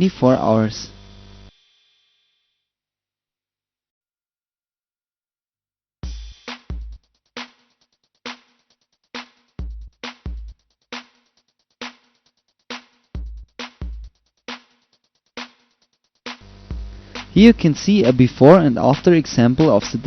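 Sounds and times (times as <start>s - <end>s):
drum machine beat: 6.0s - 20.0s.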